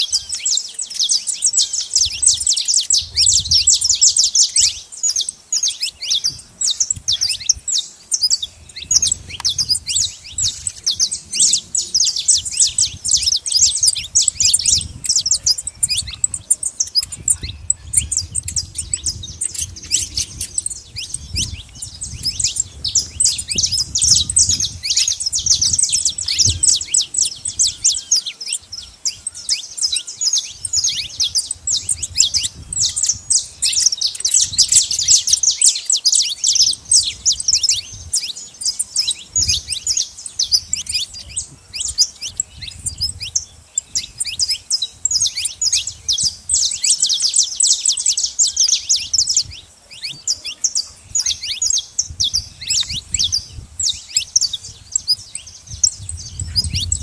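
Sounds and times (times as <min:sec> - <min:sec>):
finches chirping: 0:00.0 - 0:57.0.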